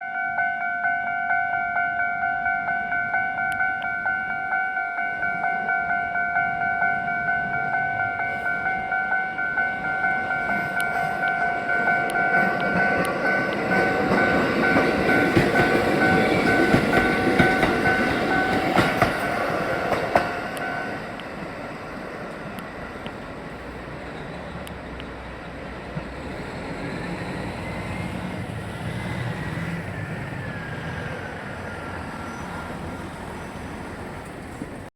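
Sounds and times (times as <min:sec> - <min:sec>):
level crossing warning bell ringing: 0:00.0 - 0:21.2
train wheels clattering over rails: 0:10.4 - 0:21.6.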